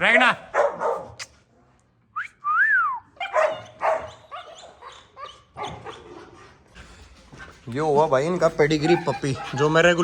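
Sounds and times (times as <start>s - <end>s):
dogs yelping and barking: 3.2s - 7.2s.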